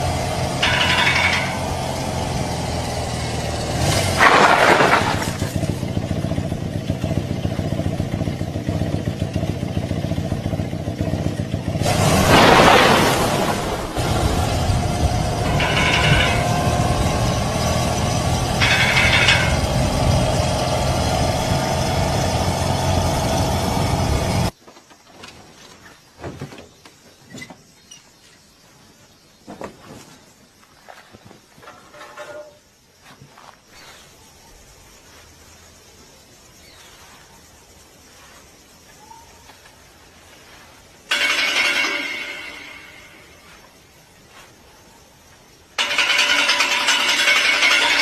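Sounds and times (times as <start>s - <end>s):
motorcycle engine humming: 0.0s - 24.6s, 33.8s - 48.0s
loud rushing bursts: 11.8s - 24.5s.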